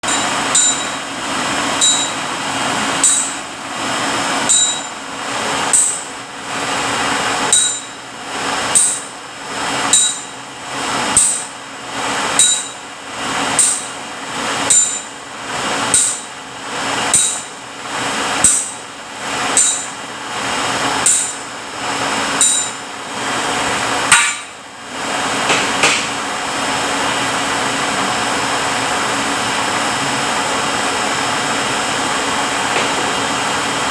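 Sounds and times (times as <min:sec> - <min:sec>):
sharp metallic clank: 0:00.0 - 0:01.0, 0:01.8 - 0:02.3, 0:03.0 - 0:03.4, 0:04.4 - 0:05.0, 0:05.7 - 0:06.1, 0:07.5 - 0:08.0, 0:09.9 - 0:10.4, 0:12.4 - 0:12.8, 0:14.7 - 0:15.1, 0:17.1 - 0:17.5, 0:19.6 - 0:20.0, 0:21.0 - 0:21.5, 0:22.4 - 0:22.8, 0:24.1 - 0:24.6
test rig running: 0:00.0 - 0:33.9.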